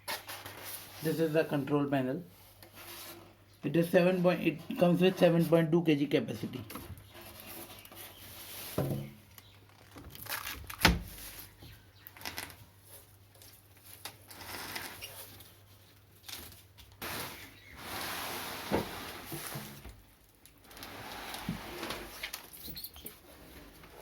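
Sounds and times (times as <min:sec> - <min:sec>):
rustling: 0:06.7 - 0:24.0.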